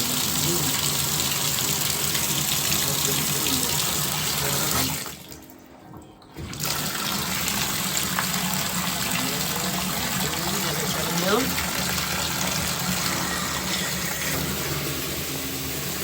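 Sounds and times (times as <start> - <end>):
water gushing from bathtub spout: 0.0 - 5.4, 6.4 - 16.0.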